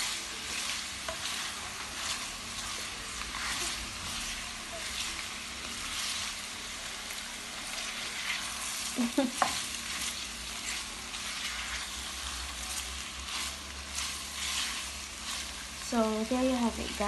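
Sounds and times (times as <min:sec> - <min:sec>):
utensil scraping a pan: 0:00.0 - 0:06.4, 0:09.4 - 0:15.6
food sizzling in a frying pan: 0:00.0 - 0:17.0.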